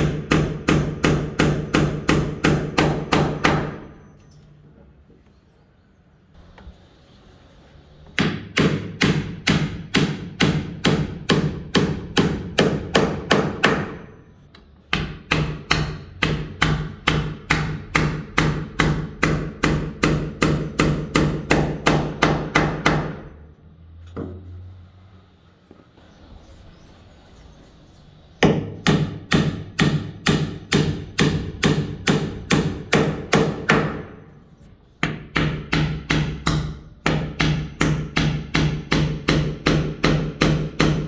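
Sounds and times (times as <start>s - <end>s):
hammer driving nail into wood: 8.2s - 14.1s, 28.4s - 34.1s, 35.0s - 41.0s.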